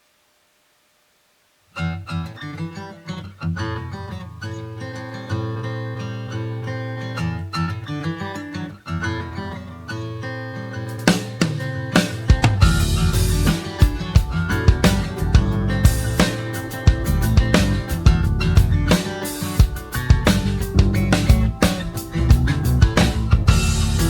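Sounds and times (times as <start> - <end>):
strummed acoustic guitar: 1.7 - 24.0
drums: 10.9 - 24.0.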